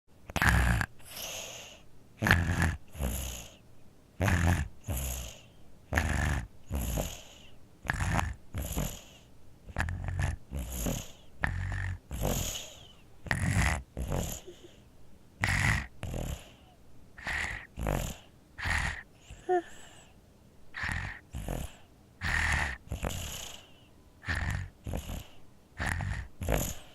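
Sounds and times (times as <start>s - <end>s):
infant snoring: 0.3s - 3.6s, 4.2s - 14.8s, 15.4s - 20.1s, 20.8s - 26.9s.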